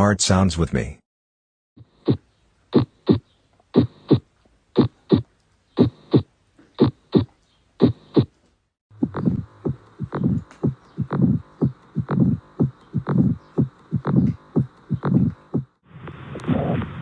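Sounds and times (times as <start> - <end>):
heartbeat through stethoscope: 2.8 - 3.2, 3.8 - 8.3, 8.9 - 15.8
steady hum: 8.9 - 17.0.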